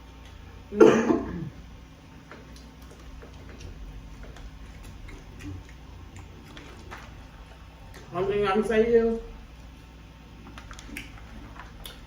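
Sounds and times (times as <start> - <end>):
person chewing and handling food: 0.0 - 0.7, 1.4 - 8.4, 9.3 - 12.0.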